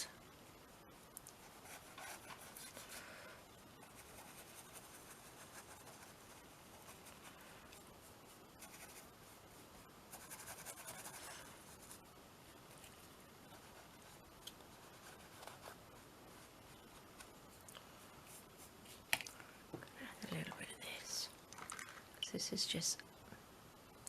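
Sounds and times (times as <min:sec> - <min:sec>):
paintbrush rubbing on paper: 0:03.8 - 0:09.5, 0:10.1 - 0:12.0, 0:13.5 - 0:17.1.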